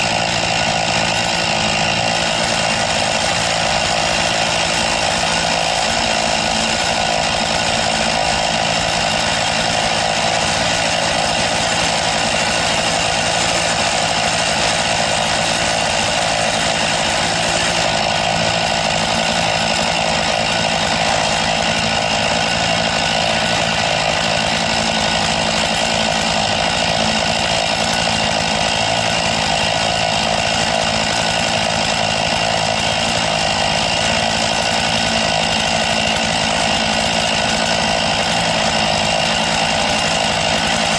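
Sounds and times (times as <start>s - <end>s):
chainsaw cutting log: 0.0s - 40.9s.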